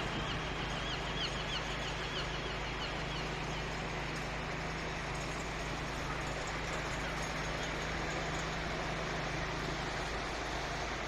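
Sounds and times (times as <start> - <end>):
city traffic hum: 0.0 - 11.0.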